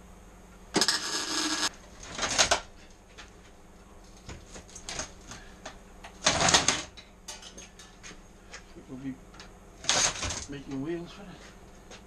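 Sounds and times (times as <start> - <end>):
arc welder crackling bursts: 0.7 - 2.6.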